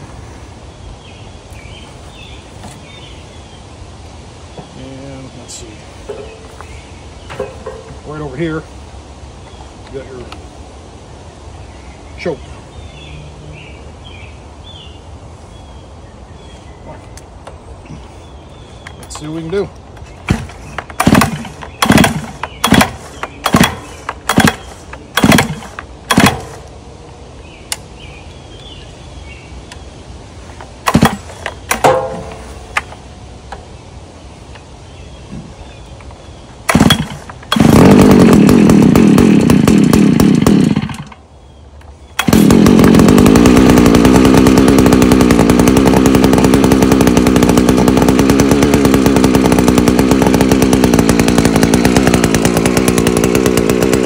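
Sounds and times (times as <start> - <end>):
two-stroke engine running: 18.8 - 26.7, 30.6 - 33.0, 36.6 - 41.2, 42.1 - 54.0
recoil starter pulls: 18.9 - 26.7, 30.6 - 33.0, 36.6 - 41.2, 42.2 - 54.0.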